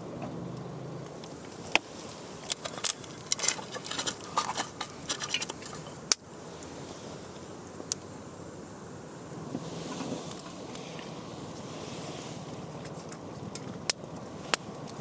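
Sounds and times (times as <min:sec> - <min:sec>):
background noise: 0:00.0 - 0:15.0.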